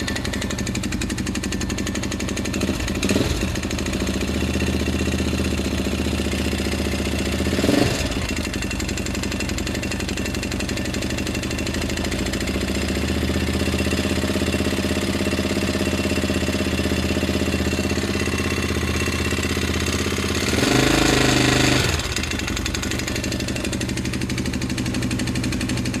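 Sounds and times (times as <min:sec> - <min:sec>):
engine idling with knocking: 0:00.0 - 0:26.0
engine revving: 0:02.6 - 0:03.7, 0:07.2 - 0:08.6, 0:19.8 - 0:23.8.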